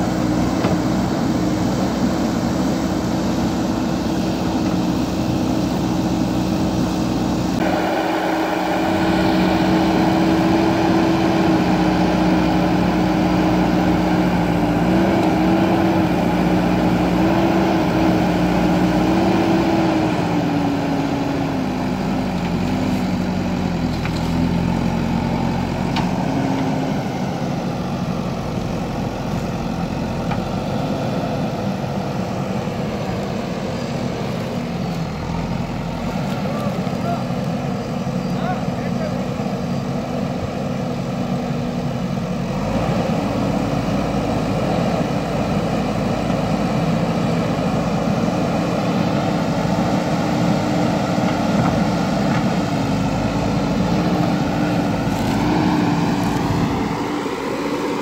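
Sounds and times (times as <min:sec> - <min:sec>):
diesel engine running: 0:00.0 - 0:58.0.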